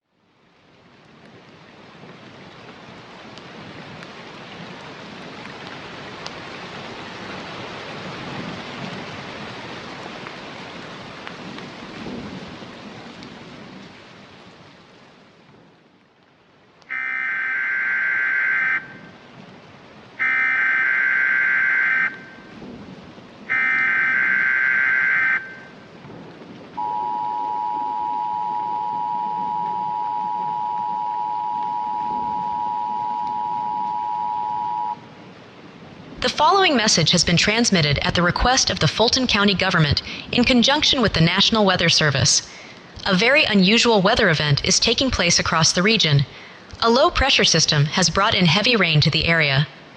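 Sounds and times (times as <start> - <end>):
rain: 0.0 - 49.9
thunder rumbling: 6.5 - 14.3, 16.9 - 43.0
two-tone attention signal: 20.2 - 22.4, 23.5 - 25.7, 26.8 - 35.0
warbling digital data tones: 26.8 - 35.0.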